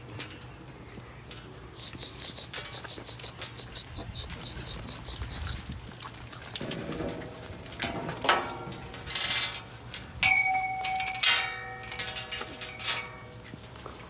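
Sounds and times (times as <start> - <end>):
metal gate clanking and rattling: 6.8 - 13.5
ringing metal strike: 9.3 - 13.2.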